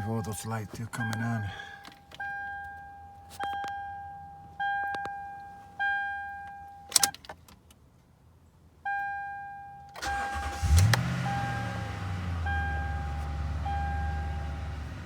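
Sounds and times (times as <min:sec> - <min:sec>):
cabin warning chime dinging: 0:00.0 - 0:07.1, 0:12.4 - 0:14.7
truck engine cranking and idling: 0:10.0 - 0:15.0.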